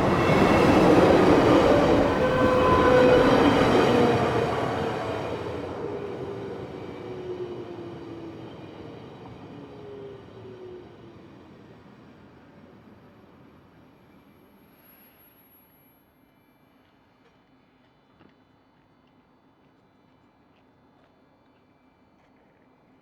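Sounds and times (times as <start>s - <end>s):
distant train rumbling: 0.0s - 12.0s.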